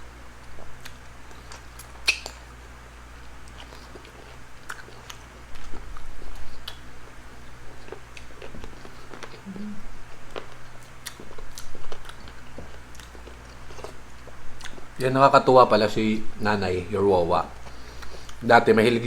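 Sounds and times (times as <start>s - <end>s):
chewing with wet mouth clicks: 0.4s - 2.5s, 3.2s - 6.9s, 7.7s - 9.4s, 10.2s - 15.0s.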